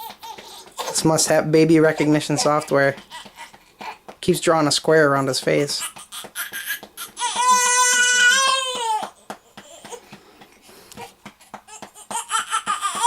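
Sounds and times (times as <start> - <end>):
baby crying: 0.0 - 1.1, 1.8 - 4.0, 5.8 - 10.0, 11.7 - 13.0
soft taps on baby's back: 0.0 - 4.6, 5.4 - 13.0.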